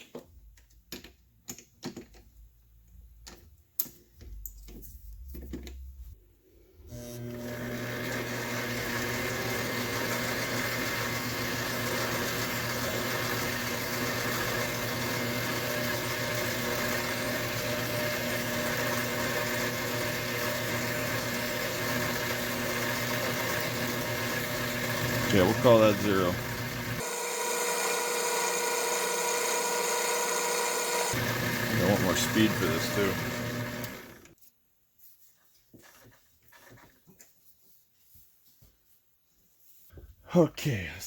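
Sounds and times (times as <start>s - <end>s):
lathe motor running: 6.9s - 34.4s.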